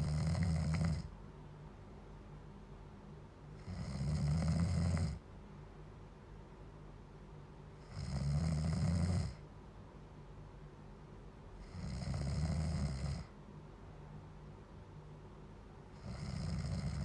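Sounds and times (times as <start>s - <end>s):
person snoring loudly: 0.0s - 1.1s, 3.6s - 5.2s, 7.8s - 9.4s, 11.6s - 13.3s, 15.9s - 17.0s.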